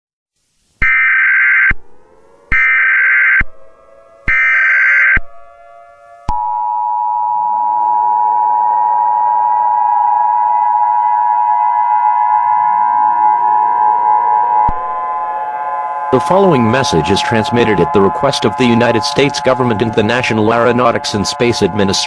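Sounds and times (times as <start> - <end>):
screeching digital data tones: 2.4 - 6.6, 8.4 - 22.0
steady two-tone attention signal: 3.5 - 22.0.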